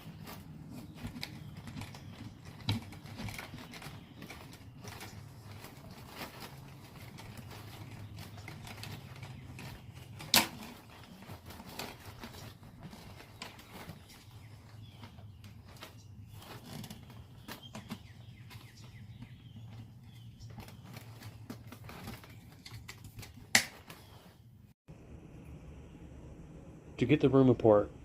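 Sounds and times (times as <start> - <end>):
low steady hum: 24.9 - 28.0.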